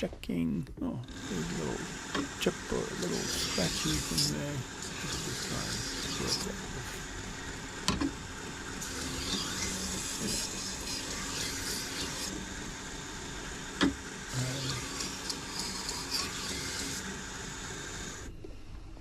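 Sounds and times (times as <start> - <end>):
belt grinder running: 1.0 - 18.3.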